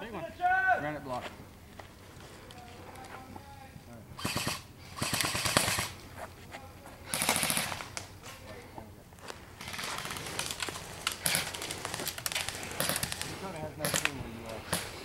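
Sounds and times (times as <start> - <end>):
airsoft guns firing bursts: 4.2 - 6.0, 7.1 - 8.0, 9.6 - 15.0.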